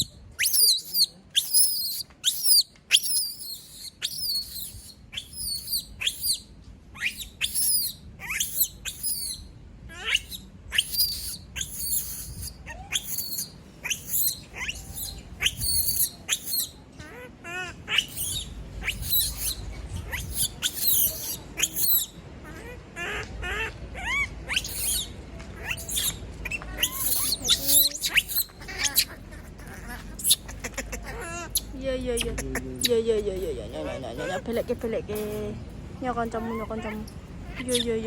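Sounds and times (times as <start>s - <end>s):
monkey screaming: 0.0s - 6.4s, 7.0s - 35.4s, 36.2s - 38.0s.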